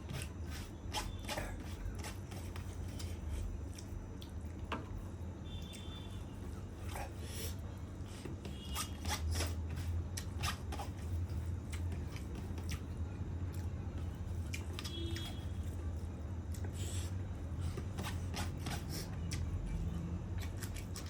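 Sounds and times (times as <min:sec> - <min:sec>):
steady low hum: 0:00.0 - 0:21.0
wet chewing and mouth smacks: 0:03.6 - 0:04.6, 0:12.6 - 0:12.9.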